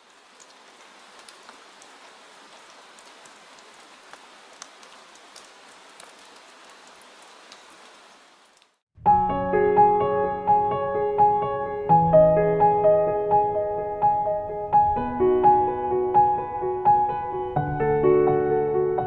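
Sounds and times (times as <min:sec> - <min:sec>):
soft rain pattering: 0:00.0 - 0:08.8.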